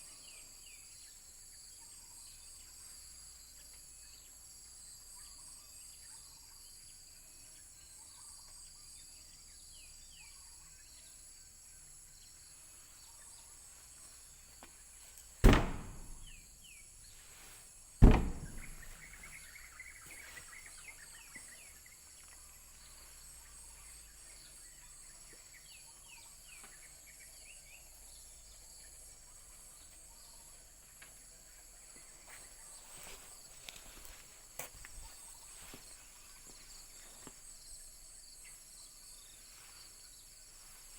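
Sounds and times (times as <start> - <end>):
loud sudden bangs: 15.4 - 16.4, 18.0 - 19.1.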